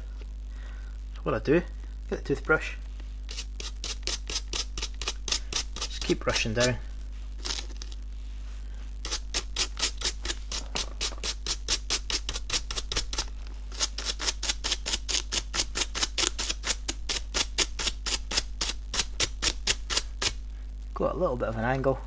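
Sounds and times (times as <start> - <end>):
toothbrush scrubbing velcro: 3.3 - 6.8, 7.4 - 8.0, 9.0 - 20.4.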